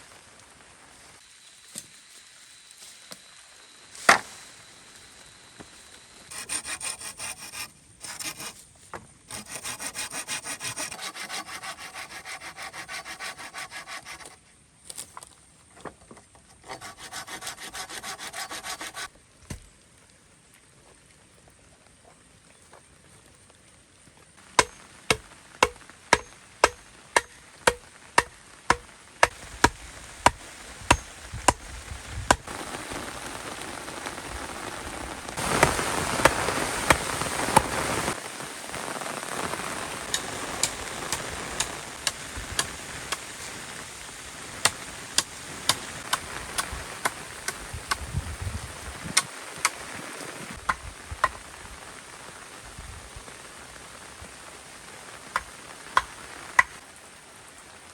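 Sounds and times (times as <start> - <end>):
rain hissing: 0.0 - 6.6, 24.3 - 57.9
sharp chopping strikes: 24.6 - 31.7.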